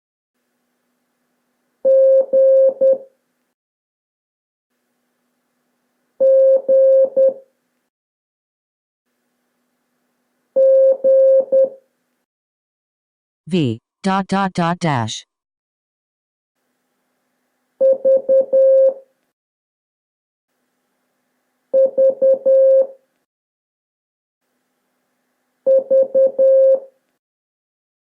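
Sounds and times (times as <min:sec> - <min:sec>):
morse code beeps: 0:17.9 - 0:19.0, 0:21.8 - 0:22.9, 0:25.7 - 0:26.9.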